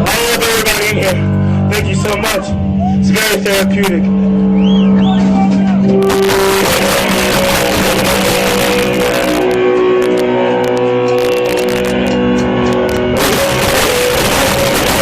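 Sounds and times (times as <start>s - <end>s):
distorted electric guitar: 0.0s - 15.0s
live rock band: 3.6s - 15.0s.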